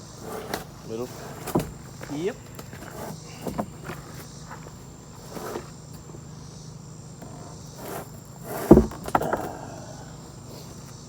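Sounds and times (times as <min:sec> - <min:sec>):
scuffing and shuffling: 0:00.0 - 0:06.3
heavy stone slab thud: 0:07.9 - 0:10.0.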